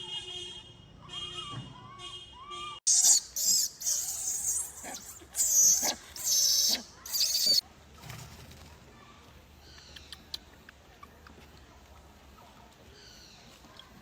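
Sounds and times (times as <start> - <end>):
young monkey screaming: 2.9 - 7.6.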